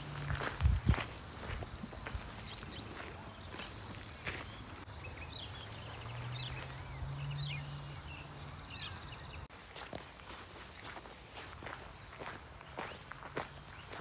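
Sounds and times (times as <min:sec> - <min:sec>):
footsteps on forest track: 0:00.0 - 0:14.0.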